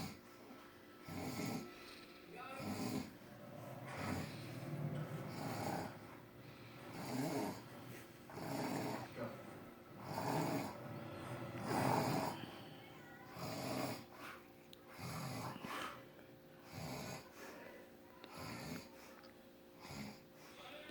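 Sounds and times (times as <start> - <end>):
man snoring: 1.0 - 1.8, 2.5 - 3.2, 3.8 - 6.1, 6.7 - 7.7, 8.3 - 9.4, 10.0 - 10.9, 11.5 - 12.5, 13.3 - 14.1.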